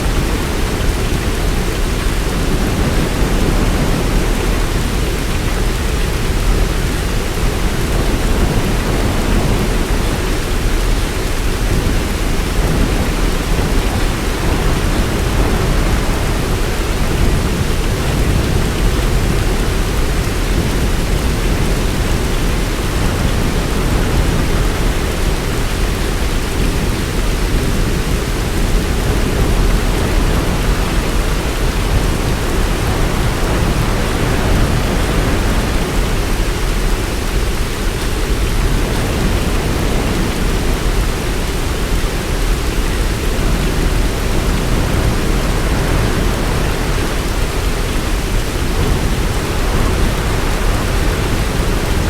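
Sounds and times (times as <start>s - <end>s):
heavy rain falling: 0.0s - 52.0s.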